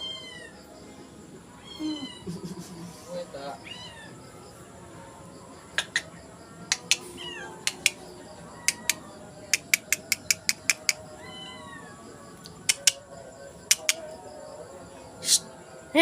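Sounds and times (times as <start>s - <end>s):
cat mewing: 1.6s - 2.4s, 3.6s - 4.2s, 7.1s - 7.9s, 10.8s - 12.0s
sharp clicks: 6.7s - 7.0s, 7.6s - 8.0s, 8.7s - 9.0s, 9.6s - 11.0s, 12.4s - 13.0s, 13.7s - 14.0s.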